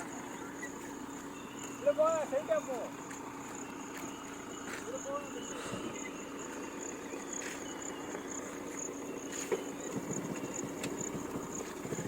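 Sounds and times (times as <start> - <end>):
car driving over rough track: 0.0 - 12.0
high pulsing chirp: 0.0 - 12.0.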